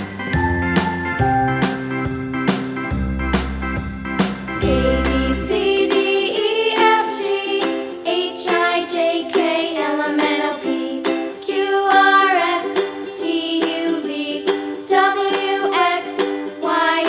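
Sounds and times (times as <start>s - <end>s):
cheerful children's song: 0.0s - 17.0s
plucked ukulele: 0.0s - 17.0s.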